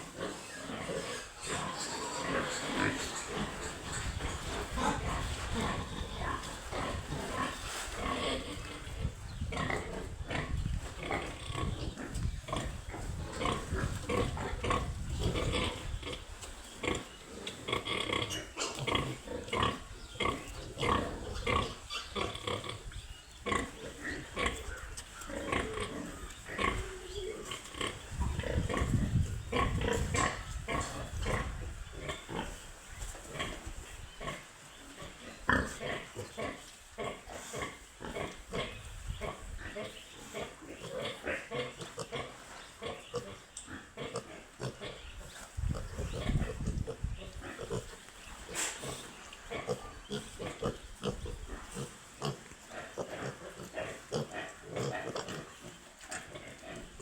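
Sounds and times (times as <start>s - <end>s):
piglets grunting: 0.0s - 32.6s, 35.0s - 57.0s.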